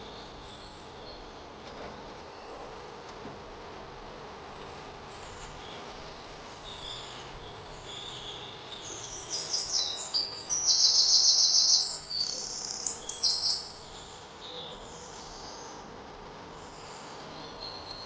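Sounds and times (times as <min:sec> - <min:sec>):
songbird chirping and trilling: 0:06.6 - 0:15.7
faint insect chorus: 0:06.6 - 0:18.0.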